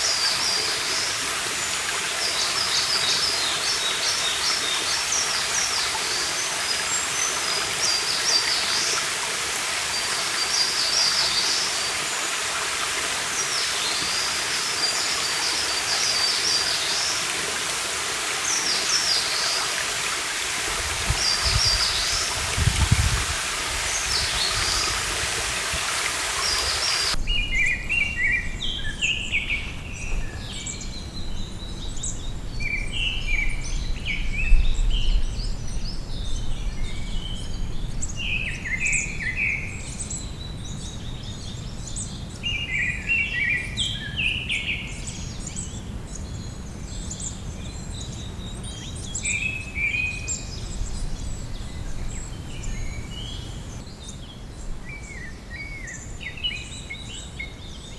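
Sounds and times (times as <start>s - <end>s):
stream rushing: 0.0s - 27.6s
songbirds chirping: 0.0s - 57.9s.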